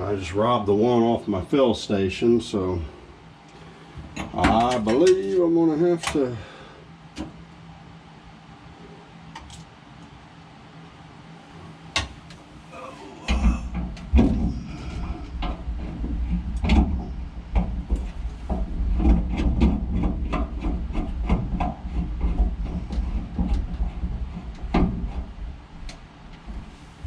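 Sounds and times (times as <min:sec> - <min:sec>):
steady low rumble: 0:12.5 - 0:27.0.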